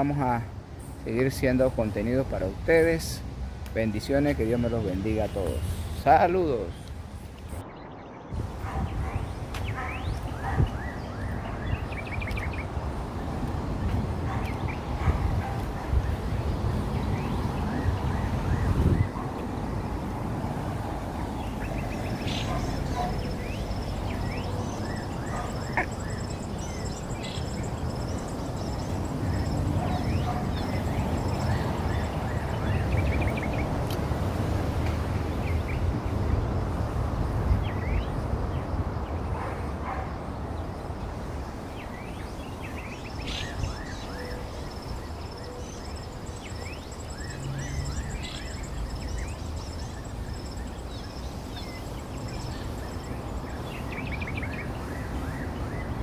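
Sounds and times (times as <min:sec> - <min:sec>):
frogs chirping: 0:07.8 - 0:33.8, 0:37.2 - 0:56.0
pulsed high frog call: 0:22.2 - 0:32.1.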